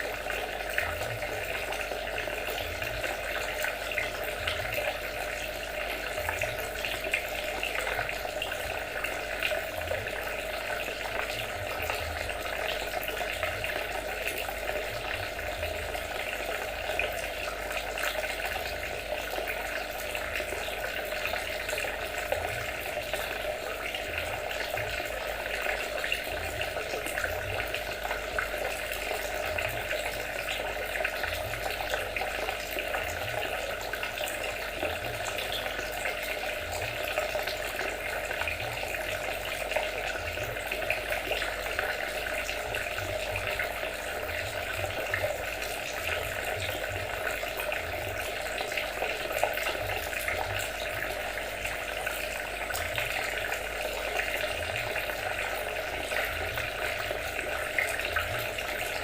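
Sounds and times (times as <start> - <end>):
water trickling and splashing: 0.0 - 59.0.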